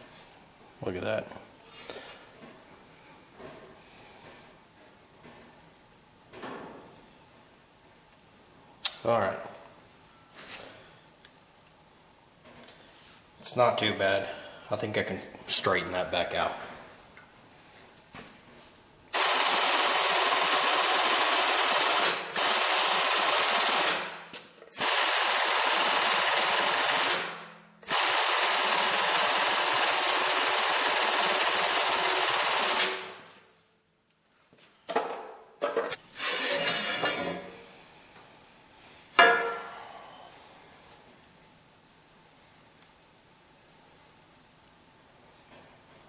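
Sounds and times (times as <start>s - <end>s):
metal clanks: 39.2s - 39.8s.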